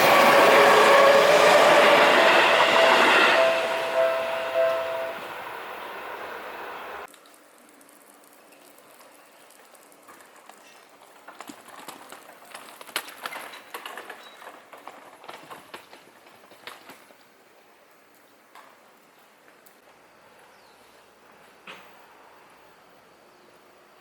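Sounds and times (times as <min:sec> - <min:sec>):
passing train: 0:00.0 - 0:07.1.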